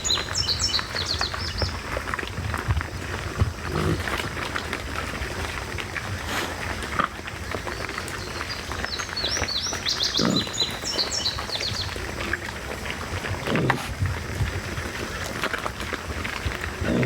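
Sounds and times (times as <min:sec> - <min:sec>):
bird chirping: 0:00.0 - 0:01.7, 0:07.7 - 0:12.0
hogs grunting: 0:00.1 - 0:17.0
rustling in leaf litter: 0:02.9 - 0:09.9.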